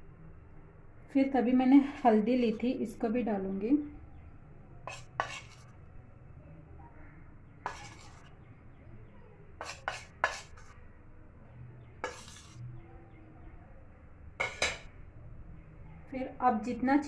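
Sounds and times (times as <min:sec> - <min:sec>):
spoon scraping bowl: 0:01.8 - 0:02.7, 0:04.8 - 0:05.8, 0:07.6 - 0:08.4, 0:09.6 - 0:10.8, 0:12.0 - 0:12.7, 0:14.4 - 0:14.9
metal spoon clinking on pan: 0:14.4 - 0:14.9.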